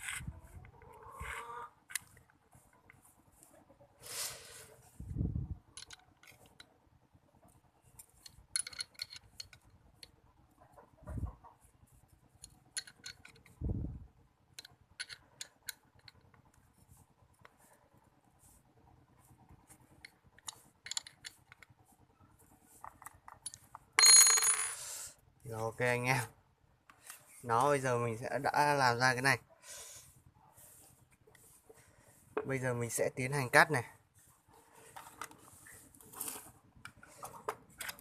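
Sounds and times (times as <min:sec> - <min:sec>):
small hardware clicking: 0:14.6 - 0:16.3.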